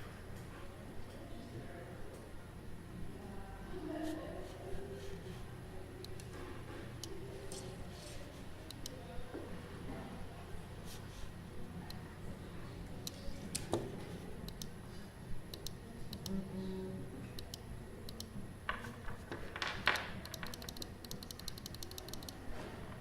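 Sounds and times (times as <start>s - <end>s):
scattered clicks: 6.0s - 6.3s, 8.7s - 9.0s, 14.5s - 14.8s, 15.5s - 16.4s, 17.4s - 18.3s, 19.8s - 22.4s
computer keyboard typing: 19.7s - 22.4s.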